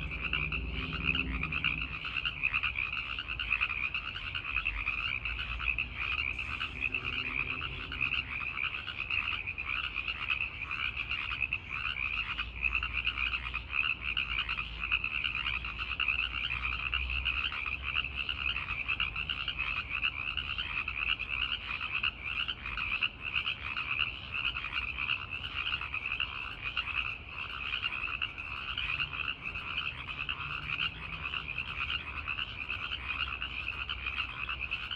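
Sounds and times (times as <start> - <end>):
tree frogs chorus calling: 0.0 - 34.9.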